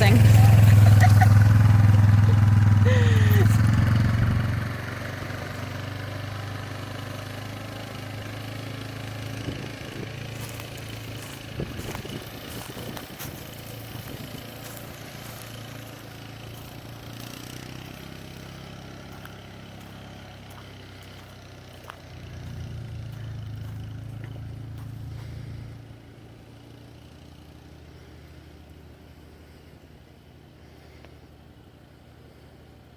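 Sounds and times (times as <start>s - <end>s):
vehicle engine running: 0.0s - 32.9s.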